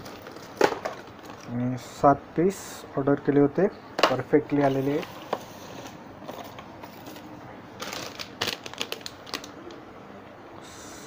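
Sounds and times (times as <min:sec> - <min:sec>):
plastic packaging crinkling: 0:00.0 - 0:01.6, 0:04.6 - 0:09.8.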